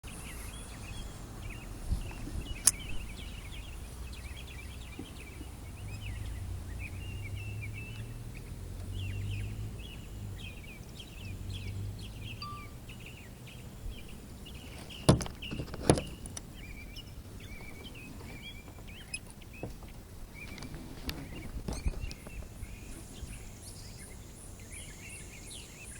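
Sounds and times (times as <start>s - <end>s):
birds chirping: 0.0s - 25.9s
low rumble: 0.7s - 5.0s
sharp clicks: 2.6s - 3.2s.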